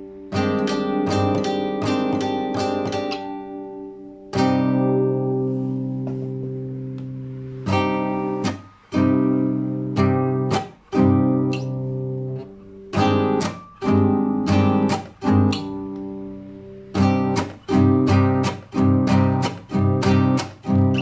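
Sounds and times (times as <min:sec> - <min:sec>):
acoustic guitar strumming chords: 0:00.0 - 0:21.0.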